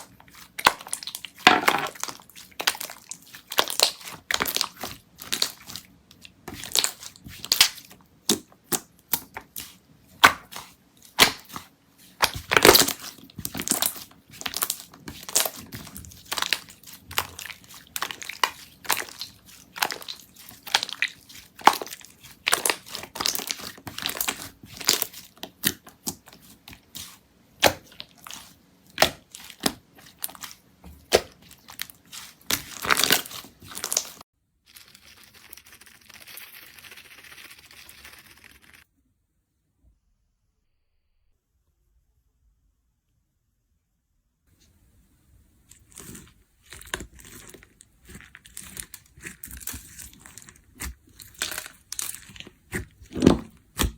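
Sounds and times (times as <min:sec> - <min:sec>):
slime crackling and popping: 0:01.9 - 0:05.7, 0:31.1 - 0:34.2, 0:45.9 - 0:53.9.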